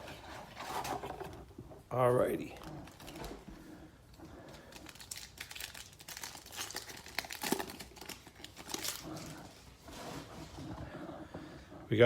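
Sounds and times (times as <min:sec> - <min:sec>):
foil wrapper crinkling: 0:04.4 - 0:09.4.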